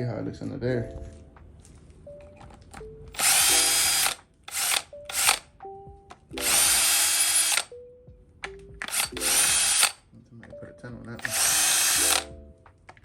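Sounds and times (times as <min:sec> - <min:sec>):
cordless power drill bursts: 0:03.2 - 0:05.4, 0:06.4 - 0:07.7, 0:08.9 - 0:10.0, 0:11.2 - 0:12.3.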